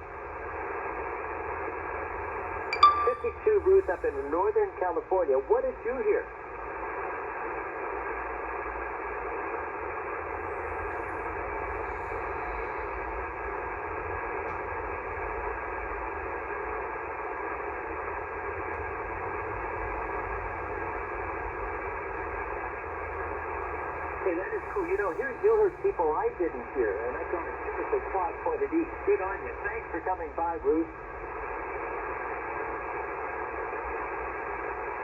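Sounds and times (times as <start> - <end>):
radio static hiss: 22.5 - 35.0.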